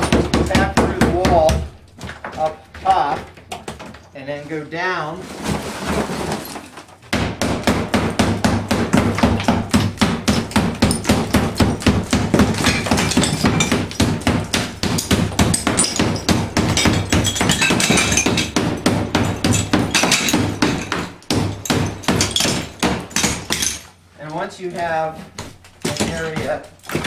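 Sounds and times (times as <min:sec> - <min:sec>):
hammer striking wall: 0:00.0 - 0:01.8, 0:07.1 - 0:23.9, 0:25.4 - 0:27.0.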